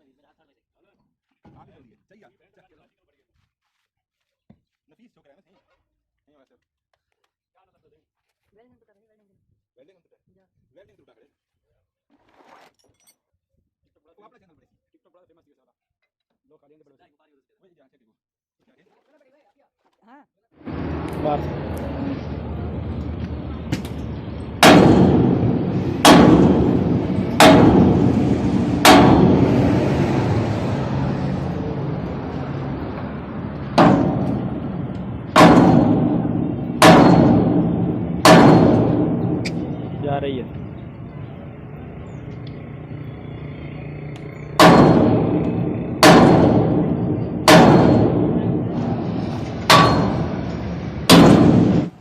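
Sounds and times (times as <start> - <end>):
hammer blows on steel: 20.7 - 41.0, 44.2 - 51.9
heavy booming impacts: 20.7 - 52.0.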